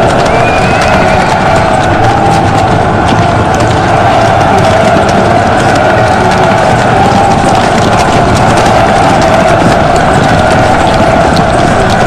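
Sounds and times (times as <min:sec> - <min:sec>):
galloping horses' hooves: 0:00.0 - 0:12.0
loud battle din: 0:00.0 - 0:12.0.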